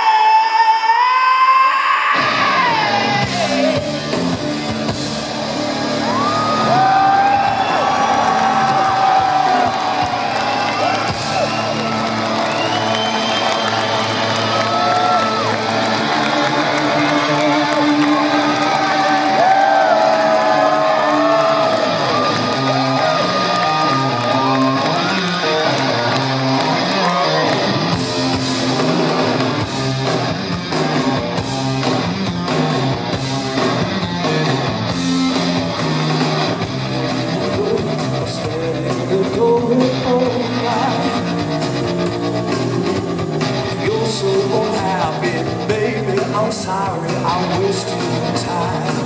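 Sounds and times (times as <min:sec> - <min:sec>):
electric guitar riff: 0:02.2 - 0:49.0
drums and cymbals: 0:02.4 - 0:11.9, 0:27.5 - 0:49.0.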